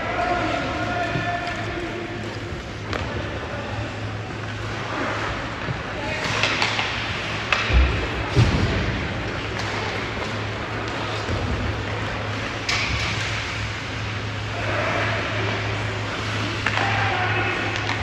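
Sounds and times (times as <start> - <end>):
steady low hum: 0.0 - 18.0
hockey puck and stick knocks: 5.7 - 11.7.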